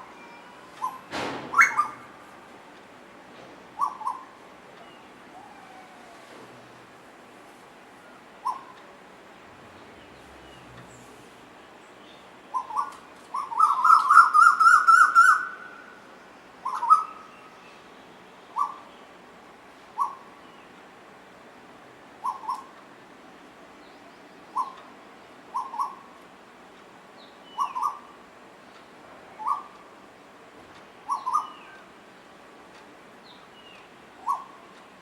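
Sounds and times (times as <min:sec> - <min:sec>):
bird calling: 0:00.3 - 0:02.1, 0:03.8 - 0:06.2, 0:08.0 - 0:08.8, 0:12.5 - 0:16.0, 0:16.6 - 0:17.5, 0:18.5 - 0:18.9, 0:20.0 - 0:20.4, 0:22.2 - 0:22.7, 0:24.5 - 0:24.9, 0:25.5 - 0:26.2, 0:27.4 - 0:28.2, 0:29.3 - 0:29.8, 0:31.0 - 0:31.9, 0:33.3 - 0:34.7.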